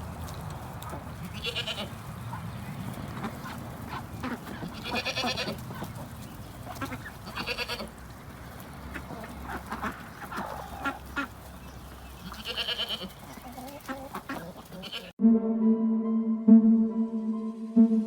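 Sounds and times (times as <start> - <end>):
goats bleating: 1.3 - 2.0, 4.2 - 5.6, 6.8 - 8.0, 12.2 - 15.2
ambient music with low hum: 15.2 - 18.0.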